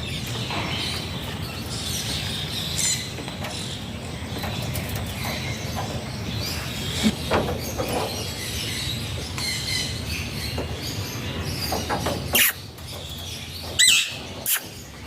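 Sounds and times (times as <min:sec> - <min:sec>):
parakeet squeaky chirps and calls: 0:08.4 - 0:15.0.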